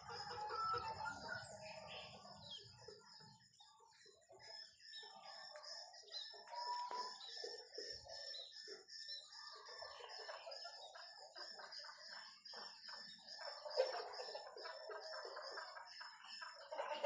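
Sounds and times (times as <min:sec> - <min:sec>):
chickens clucking: 0:00.0 - 0:17.0
small birds chirping: 0:00.0 - 0:17.0.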